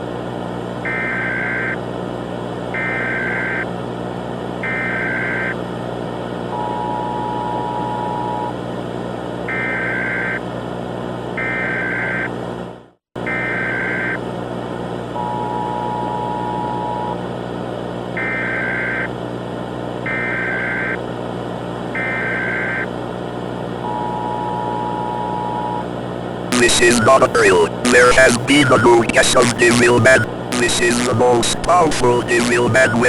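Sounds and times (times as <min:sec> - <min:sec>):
raspy digital data bursts: 0:26.5 - 0:33.0
static and hum: 0:26.5 - 0:33.0
two-tone attention beeps: 0:26.5 - 0:33.0.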